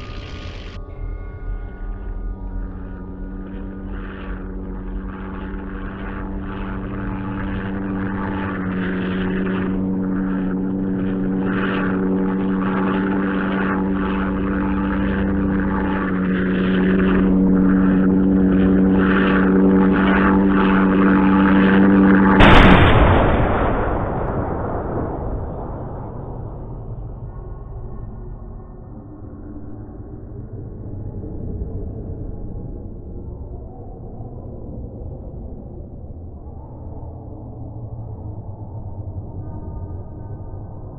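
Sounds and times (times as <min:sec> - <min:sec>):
high ringing tone: 0:00.0 - 0:22.5
propeller aircraft engine drone: 0:00.0 - 0:40.9
loud explosion: 0:22.3 - 0:27.1.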